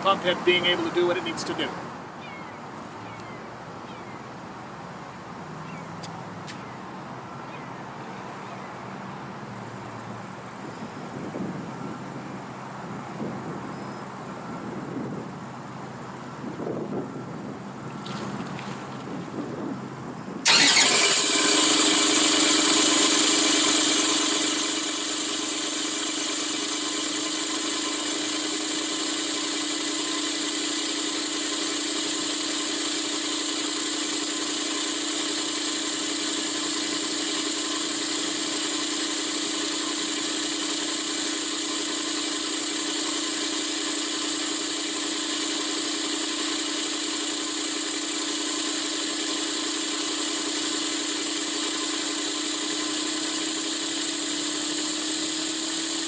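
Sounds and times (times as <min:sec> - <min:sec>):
pump droning: 0:20.4 - 0:56.0.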